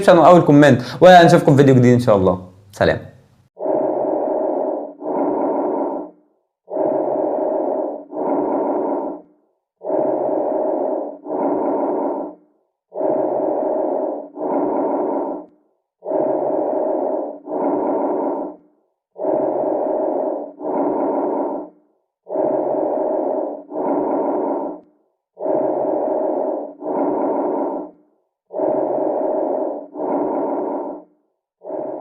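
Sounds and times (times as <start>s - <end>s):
harsh stridor breathing: 3.6s - 32.0s.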